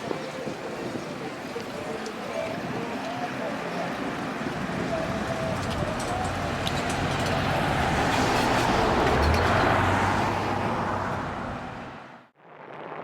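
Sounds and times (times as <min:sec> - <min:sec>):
road vehicle passing by: 0:04.2 - 0:12.3.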